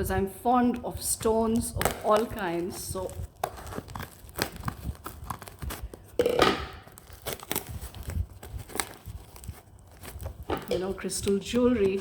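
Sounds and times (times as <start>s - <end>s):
packaging tearing and crinkling: 1.4s - 12.0s.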